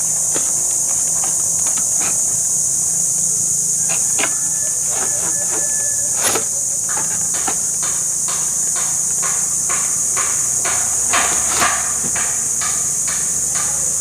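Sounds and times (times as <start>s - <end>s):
steady high hiss: 0.0s - 14.0s
clicks and knocks of parts handled: 0.1s - 2.5s, 3.8s - 9.1s.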